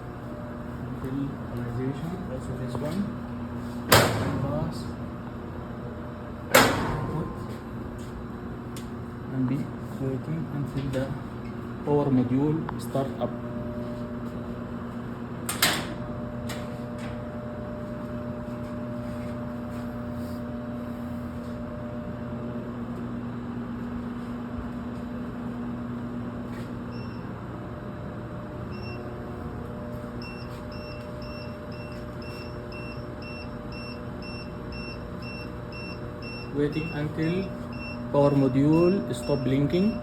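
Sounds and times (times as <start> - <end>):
machine humming: 0.0 - 23.8, 24.5 - 40.0
short high alarm beeps: 30.2 - 40.0.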